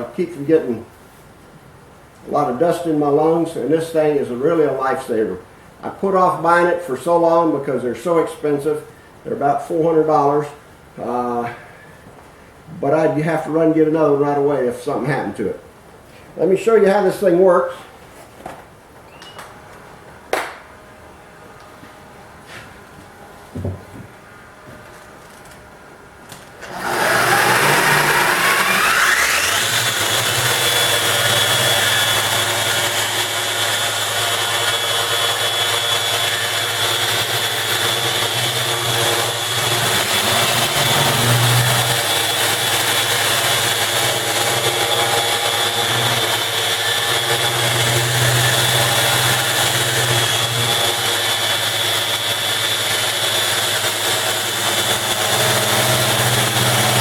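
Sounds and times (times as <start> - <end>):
orbital sander whining: 26.6 - 57.0.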